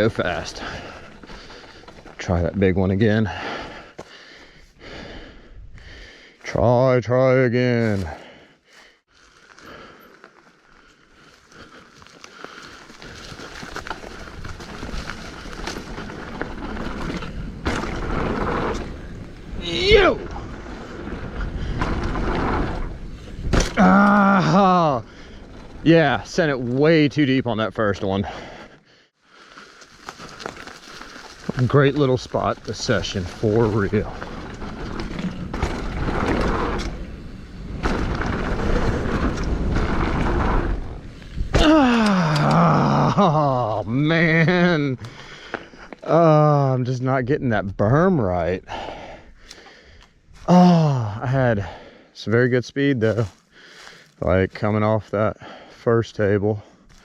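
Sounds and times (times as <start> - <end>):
bike tyres on dirt: 0.0 - 57.0
bike clicks and rattles: 9.2 - 19.5, 29.6 - 42.7
bike chain and frame rattling: 12.0 - 19.4.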